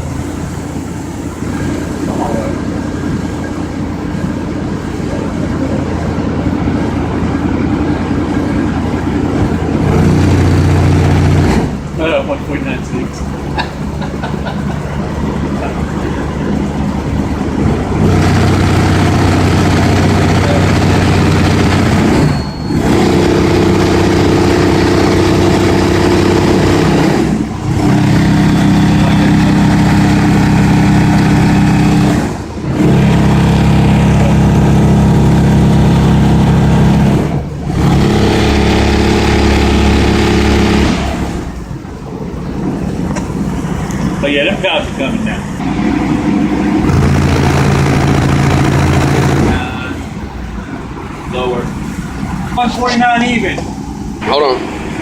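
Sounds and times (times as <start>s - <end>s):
long deep bass notes: 0.0s - 52.6s.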